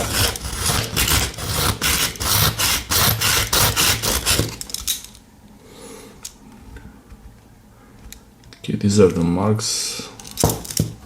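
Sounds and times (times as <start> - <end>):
knife rasping through sharpener: 0.0 - 4.6.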